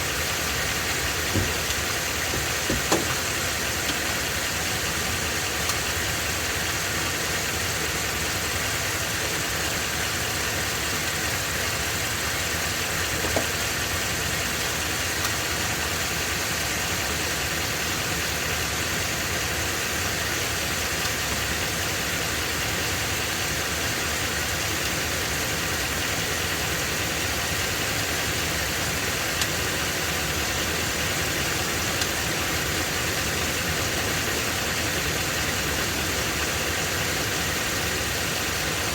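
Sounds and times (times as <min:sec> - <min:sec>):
engine running with internal knocking: 0:00.0 - 0:38.9.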